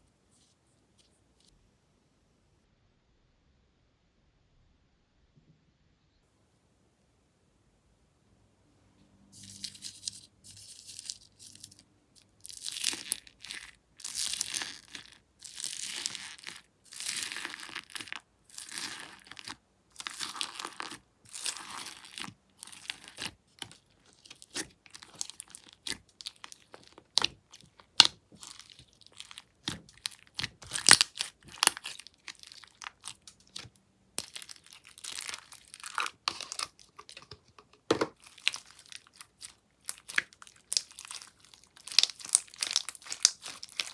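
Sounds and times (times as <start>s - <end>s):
slime squeezed by hand: 38.2s - 43.9s.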